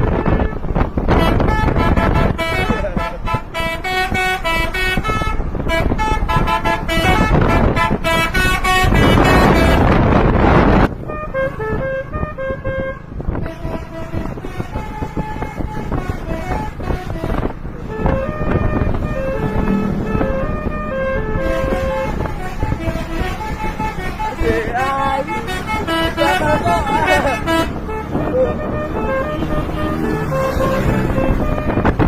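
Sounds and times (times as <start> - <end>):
multi-tone bus horn melody: 0.0 - 32.0
loud rushing noise: 5.4 - 11.1, 14.1 - 32.0.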